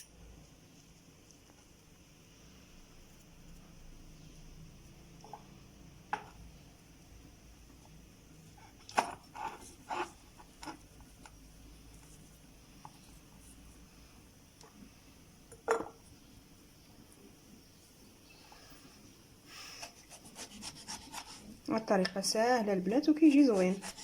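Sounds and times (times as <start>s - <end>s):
knocks and clinks against a jar: 15.5s - 16.0s.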